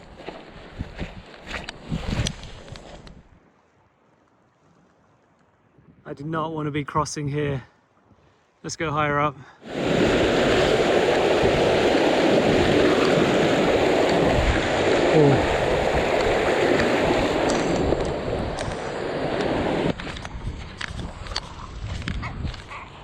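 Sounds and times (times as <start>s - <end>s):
stream water rushing: 9.6s - 20.0s.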